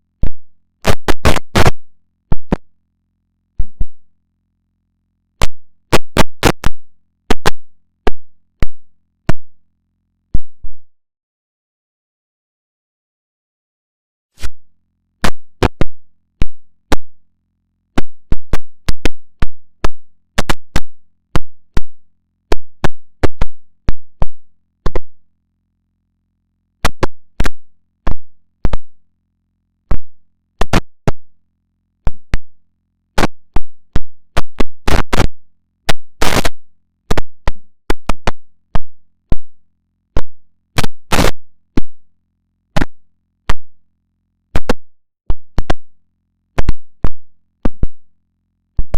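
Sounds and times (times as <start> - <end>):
faint low hum: 0.0 - 11.0, 14.4 - 48.9
glitchy clicks and pops: 0.2 - 2.7, 3.6 - 4.1, 5.4 - 9.5, 10.3 - 10.8, 15.2 - 17.2, 18.0 - 25.2, 26.8 - 29.0, 29.8 - 31.3, 32.0 - 32.5, 33.2 - 42.0, 42.8 - 43.8, 44.5 - 48.1.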